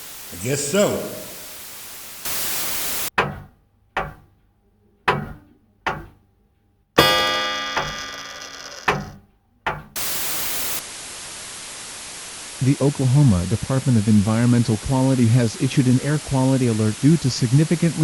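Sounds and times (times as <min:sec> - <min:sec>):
static hiss: 0:00.0 - 0:03.1, 0:10.0 - 0:18.0.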